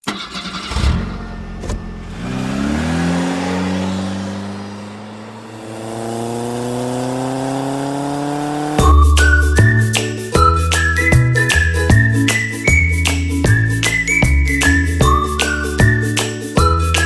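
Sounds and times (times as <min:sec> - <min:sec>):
car engine accelerating: 0:00.1 - 0:09.2.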